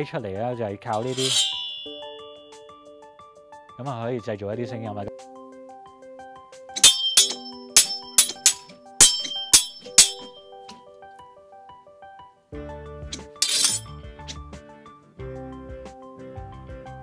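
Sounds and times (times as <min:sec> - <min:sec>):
background music: 0:00.0 - 0:17.0
props clinking: 0:01.0 - 0:02.3, 0:06.8 - 0:10.8, 0:13.1 - 0:13.9.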